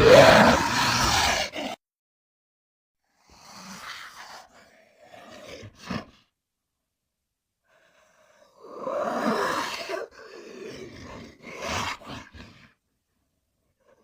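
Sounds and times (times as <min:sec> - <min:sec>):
monster hissing breathy call: 0:00.0 - 0:01.8, 0:03.2 - 0:06.2, 0:07.7 - 0:12.7.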